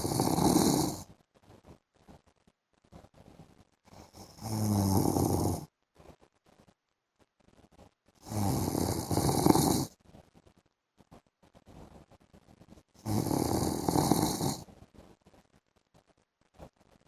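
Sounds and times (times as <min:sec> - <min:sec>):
man snoring: 0:00.0 - 0:01.0, 0:04.0 - 0:05.7, 0:08.2 - 0:09.9, 0:13.0 - 0:14.6.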